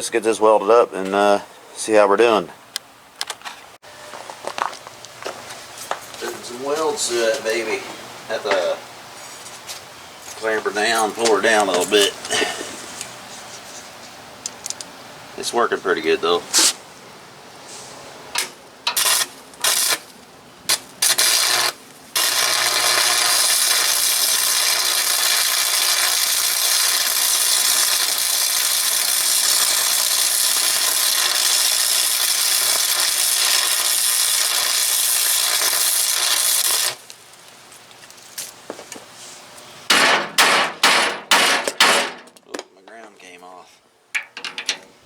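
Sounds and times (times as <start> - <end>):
arc welding crackling hiss: 18.4 - 38.6.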